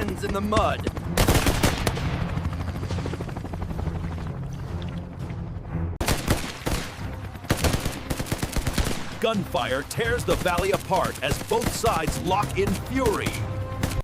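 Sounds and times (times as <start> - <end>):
automatic gunfire: 1.1 - 2.0, 6.0 - 9.2.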